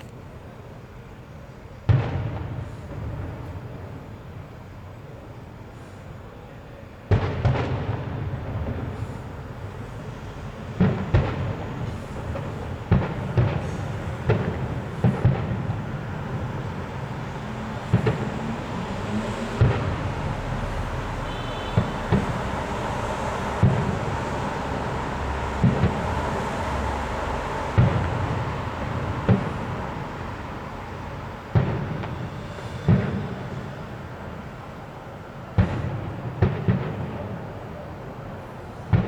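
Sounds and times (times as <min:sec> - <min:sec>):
fireworks bangs and booms: 0:00.4 - 0:39.0
crackling rumble: 0:07.2 - 0:33.6.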